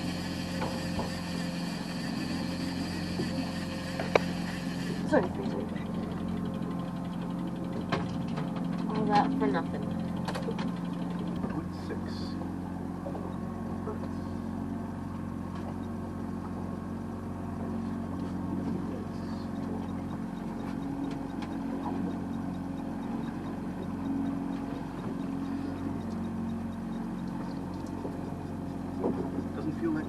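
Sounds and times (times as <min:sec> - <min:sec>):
boat motor running: 0:00.0 - 0:30.0.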